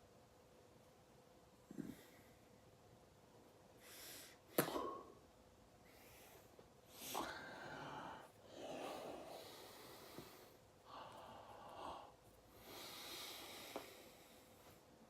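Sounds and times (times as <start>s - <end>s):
person breathing: 5.8s - 14.9s.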